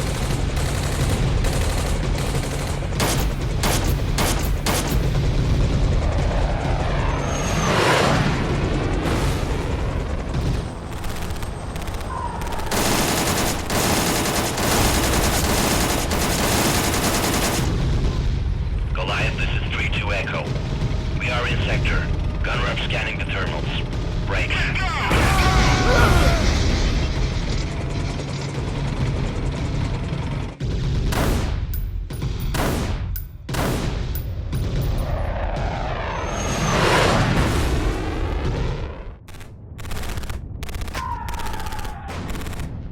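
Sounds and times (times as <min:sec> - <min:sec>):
automatic gunfire: 0:00.0 - 0:05.1, 0:10.4 - 0:17.7, 0:39.3 - 0:42.9
deep rumble: 0:00.0 - 0:42.9.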